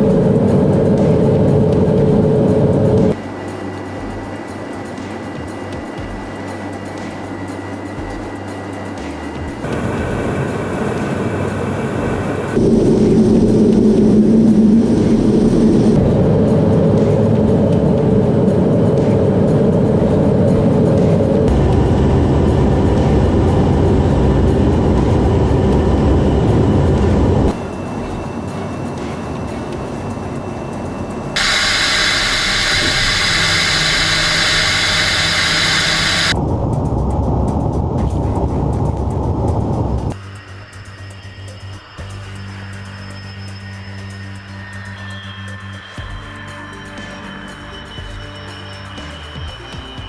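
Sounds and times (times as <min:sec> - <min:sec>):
jet engine drone: 0:00.0 - 0:50.0
loud harsh hiss: 0:18.2 - 0:36.4.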